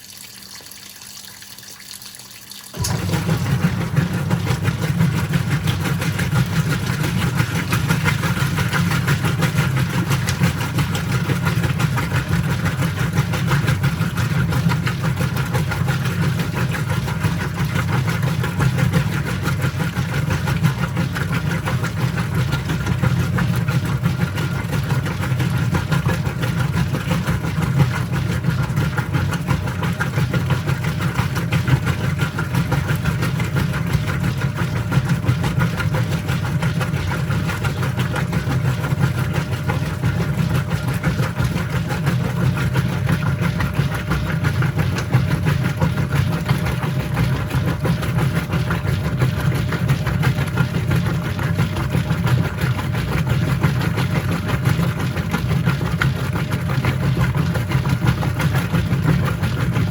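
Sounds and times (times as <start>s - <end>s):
washing machine motor humming: 0.0s - 59.9s.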